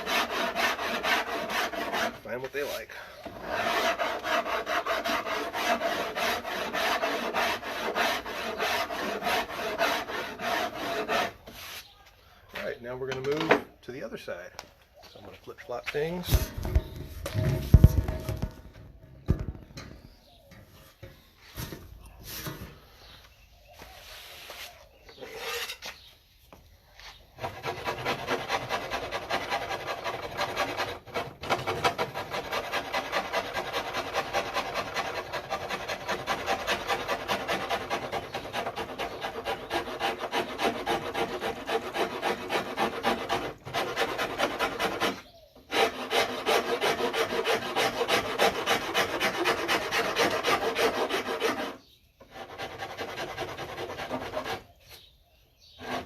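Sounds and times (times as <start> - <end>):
hand rasp filing wood: 0.0 - 11.9, 27.4 - 54.8, 55.7 - 56.0.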